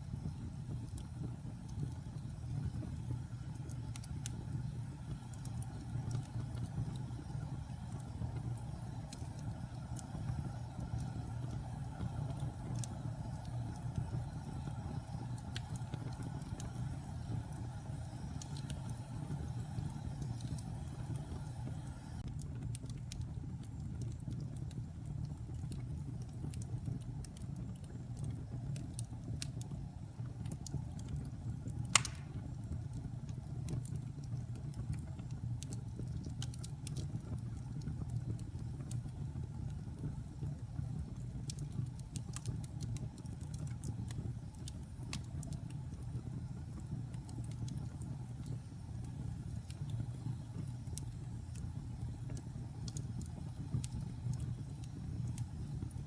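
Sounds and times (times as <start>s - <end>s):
fire crackling: 0.0s - 56.0s
fire rumbling in fireplace: 0.0s - 56.0s
loud fire pop: 31.9s - 32.6s.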